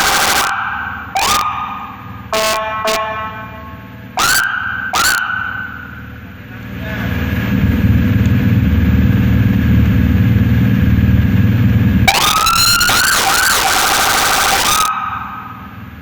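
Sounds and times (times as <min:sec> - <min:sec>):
electronic vehicle siren: 0:00.0 - 0:06.4, 0:12.1 - 0:16.0.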